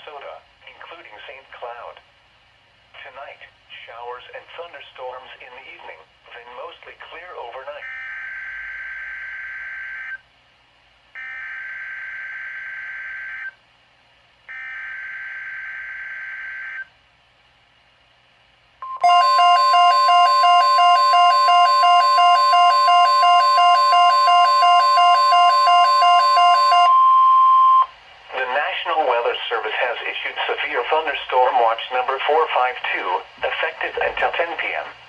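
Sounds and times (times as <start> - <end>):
pulsing beep: 18.8 - 27.9
steady warning alarm tone: 18.8 - 27.9.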